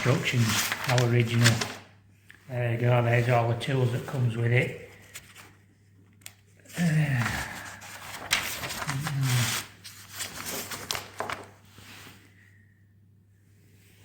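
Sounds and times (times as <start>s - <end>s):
plastic and cardboard packaging rustling: 0.0s - 1.9s, 7.2s - 12.2s
person humming or grunting: 6.7s - 7.7s.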